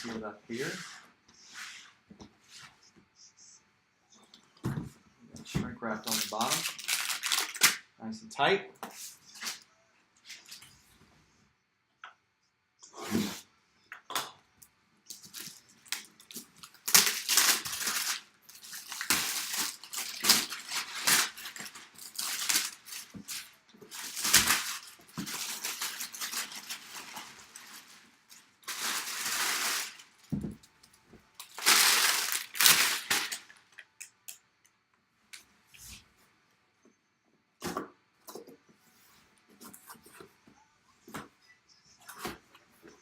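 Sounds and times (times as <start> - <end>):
plastic shrink wrap ripping: 6.0 - 7.9, 15.1 - 30.4, 31.4 - 33.8.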